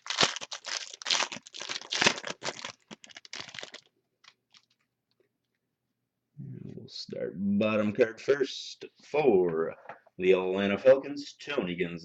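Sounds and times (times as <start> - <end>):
card pack wrapper crinkling: 0.0 - 4.8.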